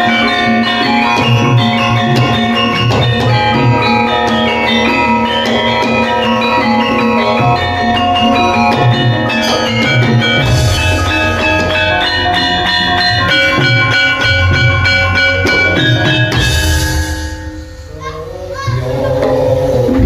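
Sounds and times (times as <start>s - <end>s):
metallophone melody: 0.0s - 18.9s.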